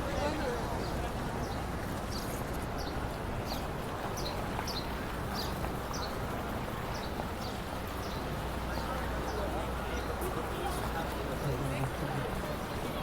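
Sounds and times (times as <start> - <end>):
city street noise: 0.0 - 13.0.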